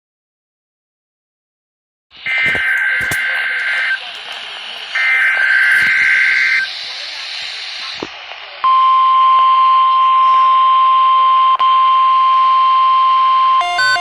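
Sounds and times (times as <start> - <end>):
radio hiss: 2.1 - 11.2
digital data burst: 2.2 - 8.0
steady warning alarm tone: 2.2 - 8.0, 8.7 - 14.0.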